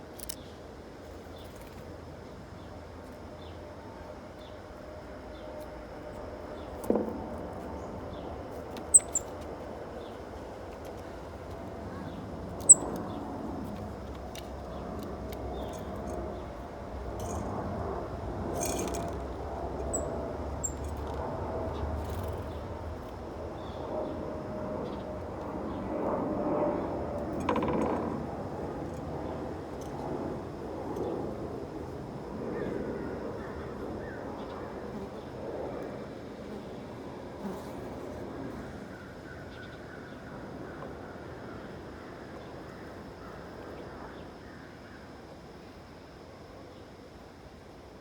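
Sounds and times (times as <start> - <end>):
small birds chirping: 7.9 - 9.4, 11.9 - 13.3, 19.8 - 20.9.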